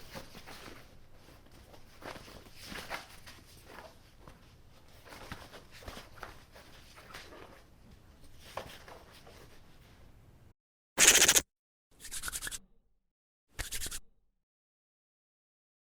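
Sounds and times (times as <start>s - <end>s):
soft taps and rustles: 0.0s - 10.0s.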